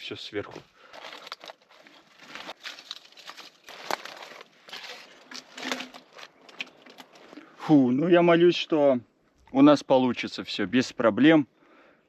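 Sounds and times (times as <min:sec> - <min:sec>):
dry kindling rustling and crackling: 0:00.4 - 0:07.6.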